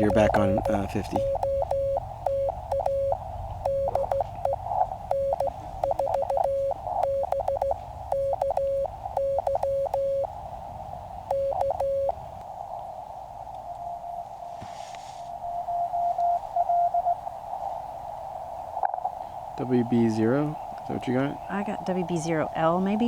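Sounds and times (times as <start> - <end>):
morse code tone keying: 0.0 - 10.3, 11.3 - 12.2
receiver hiss: 0.0 - 23.0.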